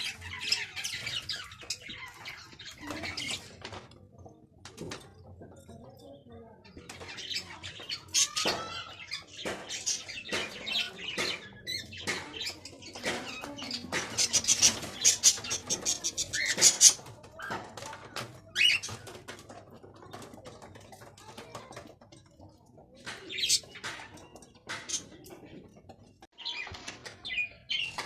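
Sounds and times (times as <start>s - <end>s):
sharp clicks and rustling: 6.7s - 28.0s.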